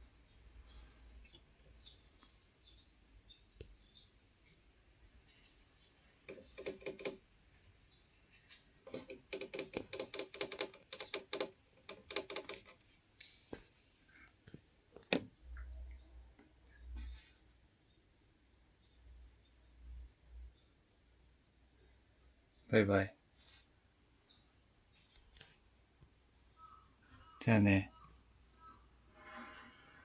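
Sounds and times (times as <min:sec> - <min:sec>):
rapid clicking and rattling: 0:06.3 - 0:07.2, 0:08.8 - 0:12.8.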